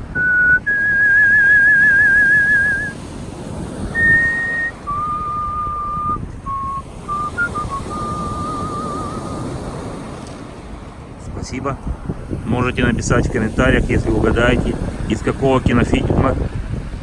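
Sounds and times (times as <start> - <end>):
background rush of noise: 0.0 - 17.0
person whistling a melody: 0.2 - 3.0, 4.0 - 9.6.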